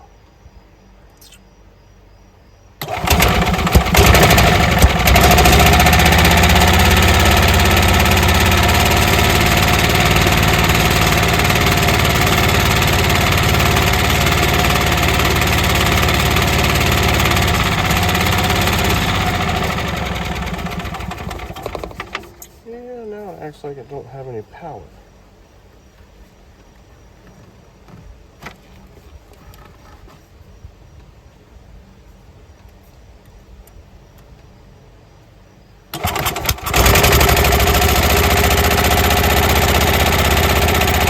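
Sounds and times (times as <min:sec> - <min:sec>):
small gas engine running: 0:02.8 - 0:22.6, 0:35.9 - 0:41.0.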